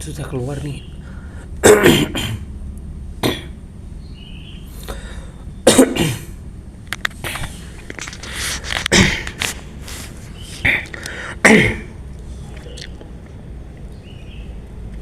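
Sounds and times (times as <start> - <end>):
man coughing wetly: 1.6 - 2.5, 3.2 - 3.6, 5.6 - 6.4, 8.9 - 9.3, 11.4 - 12.0.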